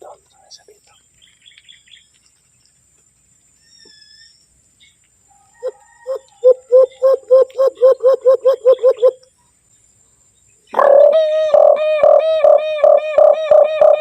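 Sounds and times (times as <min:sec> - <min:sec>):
hollow hand-blown hoots: 0:10.8 - 0:14.0.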